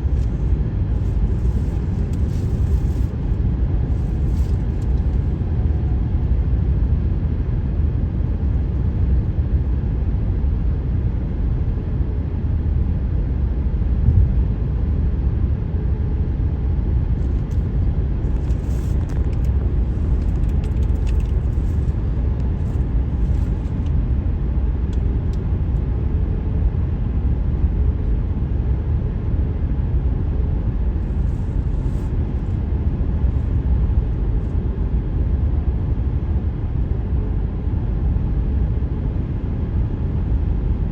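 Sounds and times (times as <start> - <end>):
tyre and road noise: 18.2 - 24.0.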